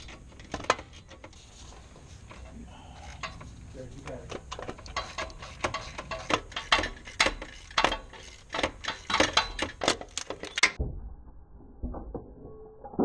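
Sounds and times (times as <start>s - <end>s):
ratchet wrench clicking: 4.5s - 10.7s.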